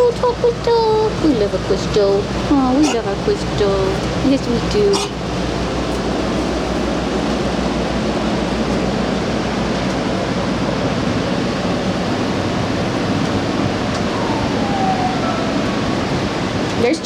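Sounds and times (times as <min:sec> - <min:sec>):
faint falling whine: 0:13.7 - 0:16.6.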